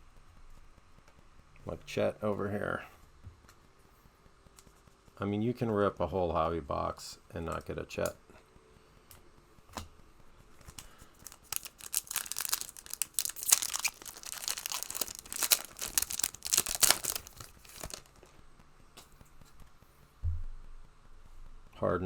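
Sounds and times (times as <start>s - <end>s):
wrapper tearing and crinkling: 11.1s - 18.3s.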